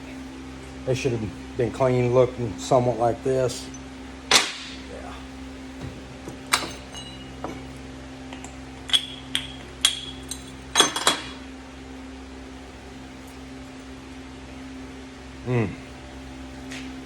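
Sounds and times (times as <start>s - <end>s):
low shop hum: 0.0s - 17.0s
metal tools clinking: 6.4s - 11.4s.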